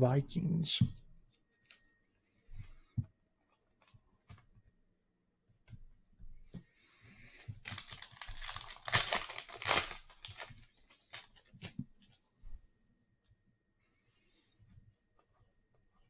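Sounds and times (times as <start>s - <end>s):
foil wrapper crinkling and tearing: 7.6s - 11.8s.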